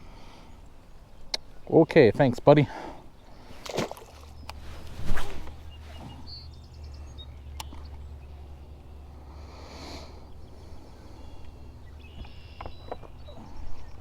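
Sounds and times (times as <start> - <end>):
faint bird chirps: 10.0 - 14.0.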